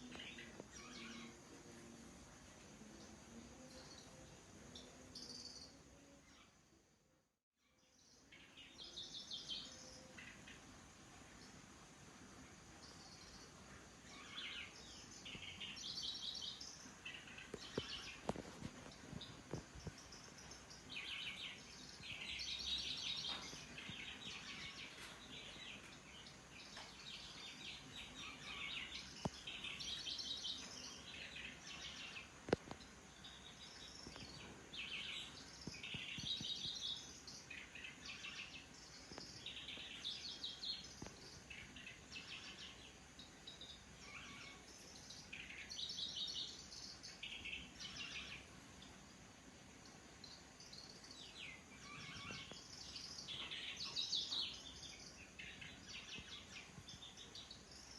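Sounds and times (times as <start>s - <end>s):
insect buzzy trilled song: 12.6s - 57.9s.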